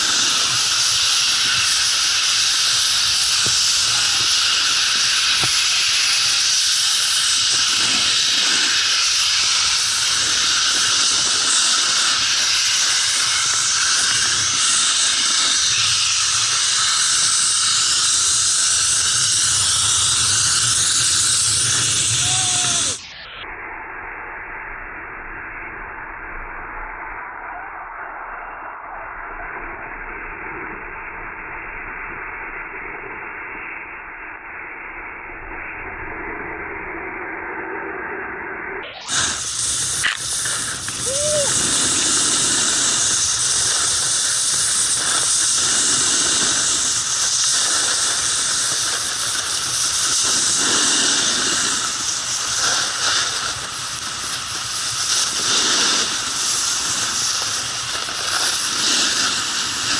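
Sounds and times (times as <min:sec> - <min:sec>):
snowboard scraping on snow: 0:00.0 - 0:23.0, 0:39.0 - 0:59.9
wind rushing over microphone: 0:00.0 - 0:23.0.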